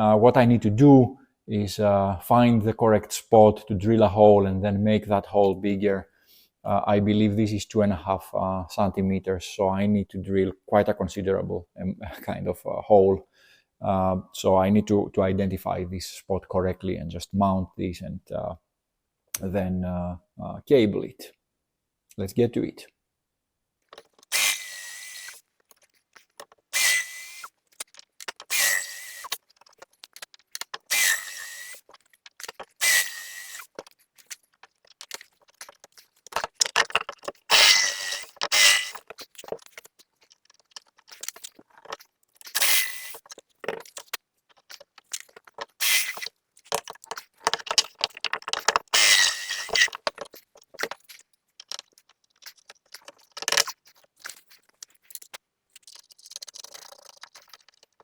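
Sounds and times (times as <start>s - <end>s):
power drill whining and grinding: 24.3s - 25.4s, 26.7s - 27.5s, 28.5s - 29.4s, 30.9s - 31.9s, 32.8s - 33.8s, 37.5s - 39.0s, 42.6s - 43.2s, 49.0s - 50.0s.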